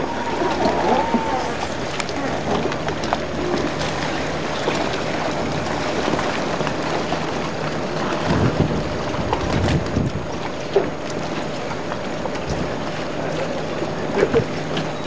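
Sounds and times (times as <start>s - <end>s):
wind buffeting microphone: 0.0s - 10.6s.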